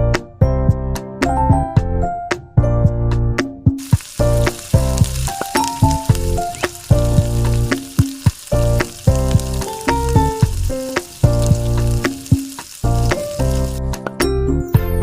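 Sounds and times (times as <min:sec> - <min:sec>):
keyboard background music: 0:00.0 - 0:15.0
food deep-frying in hot oil: 0:03.8 - 0:14.0.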